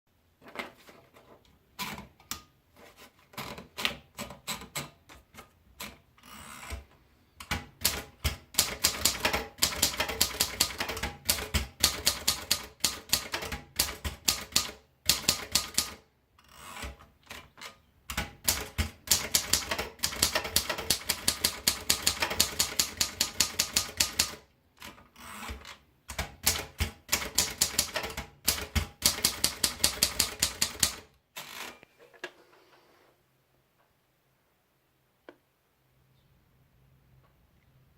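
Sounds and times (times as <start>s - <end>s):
manual typewriter typing: 3.3s - 31.8s.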